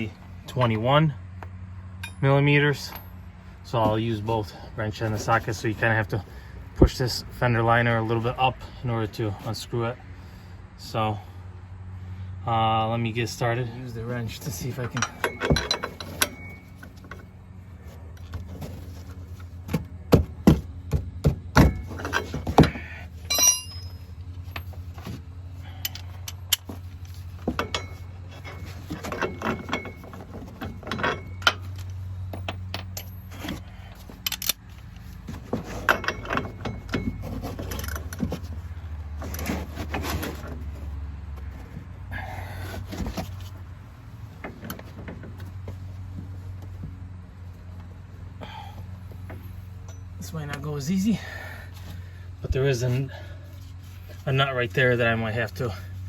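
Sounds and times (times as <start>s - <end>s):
wrench clinking on metal bolt: 14.8s - 17.2s, 23.3s - 24.7s, 27.5s - 33.6s, 35.7s - 38.2s.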